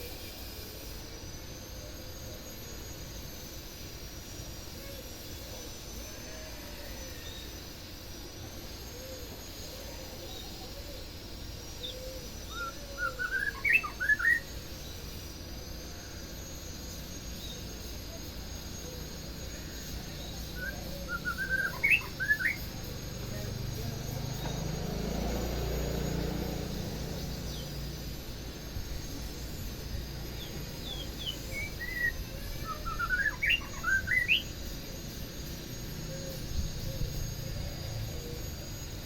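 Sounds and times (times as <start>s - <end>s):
steady background hum: 0.0s - 39.0s
bird chirping song: 11.8s - 15.0s, 20.1s - 24.8s, 26.7s - 28.0s, 30.3s - 34.6s.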